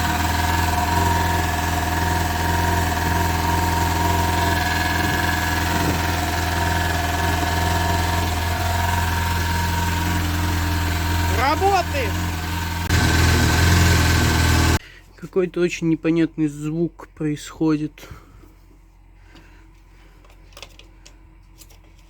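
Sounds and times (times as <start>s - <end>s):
car engine idling: 0.0s - 14.8s.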